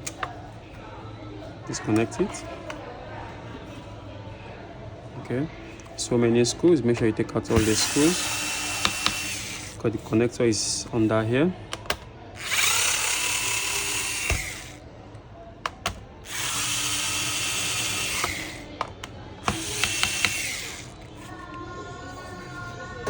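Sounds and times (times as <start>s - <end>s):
electric screwdriver whining: 7.5s - 9.8s, 11.8s - 14.8s, 15.6s - 21.3s
sharp clicks: 15.6s - 21.0s.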